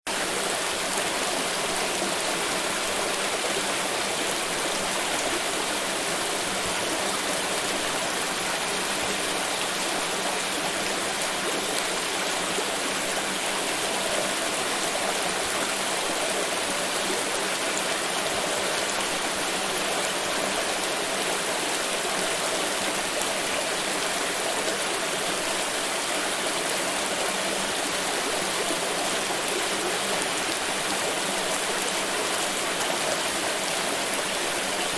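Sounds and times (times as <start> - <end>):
stream rushing over rocks: 0.1 - 34.9.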